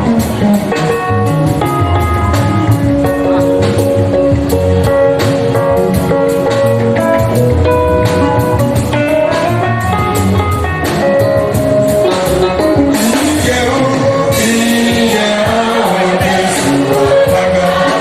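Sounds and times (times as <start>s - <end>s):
church band music: 0.0s - 18.0s
guitar: 0.0s - 18.0s
people singing: 12.9s - 18.0s.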